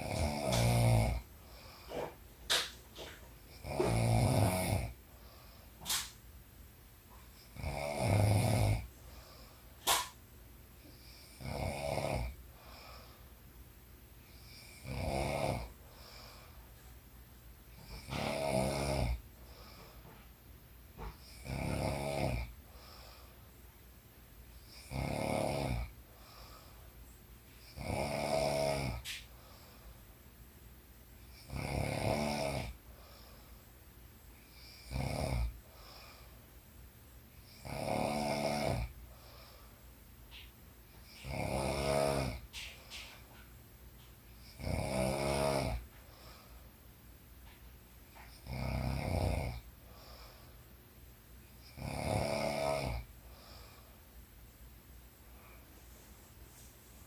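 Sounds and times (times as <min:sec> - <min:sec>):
woman snoring: 0:00.0 - 0:02.2, 0:03.5 - 0:05.0, 0:07.4 - 0:08.9, 0:10.9 - 0:13.2, 0:14.3 - 0:16.0, 0:17.8 - 0:19.2, 0:21.0 - 0:23.1, 0:24.7 - 0:26.5, 0:27.7 - 0:29.3, 0:31.3 - 0:32.8, 0:34.5 - 0:36.2, 0:37.4 - 0:39.0, 0:41.0 - 0:43.0, 0:44.4 - 0:45.8, 0:48.3 - 0:50.3, 0:51.6 - 0:53.9.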